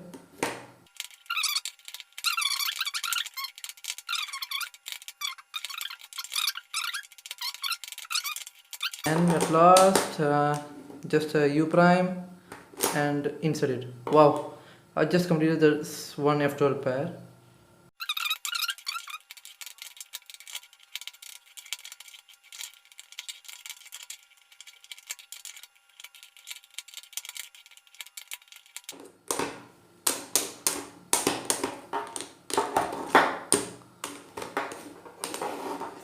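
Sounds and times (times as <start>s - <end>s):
puzzle cube clicking and clacking: 0.9s - 10.0s.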